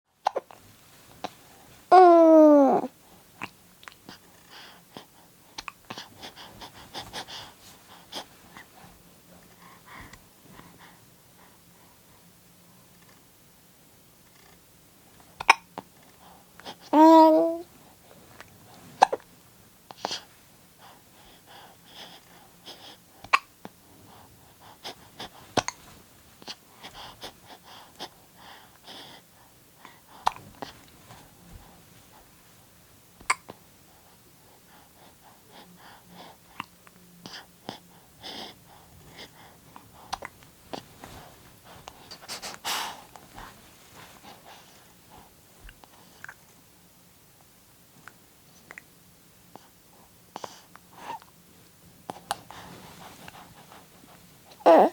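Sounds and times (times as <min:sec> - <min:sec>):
baby breathy sounds: 0:01.2 - 0:03.5, 0:04.1 - 0:11.9, 0:16.2 - 0:17.7, 0:33.3 - 0:43.6, 0:50.3 - 0:51.3, 0:54.5 - 0:54.9
baby crying: 0:01.9 - 0:02.9, 0:17.0 - 0:17.6, 0:54.6 - 0:54.9
baby hiccuping: 0:15.4 - 0:15.7.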